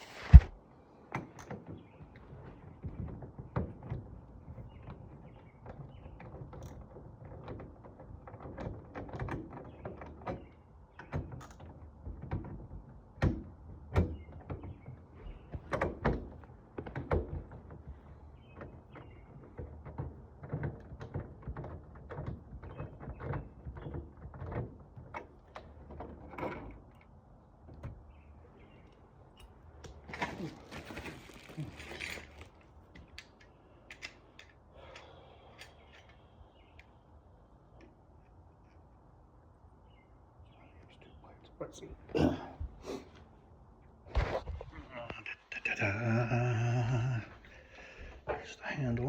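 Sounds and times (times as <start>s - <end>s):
metal lock parts clicking: 31.8s - 36.9s.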